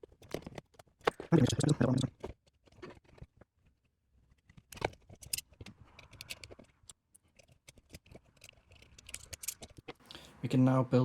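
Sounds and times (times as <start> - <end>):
plastic parts clicking: 4.3 - 10.0.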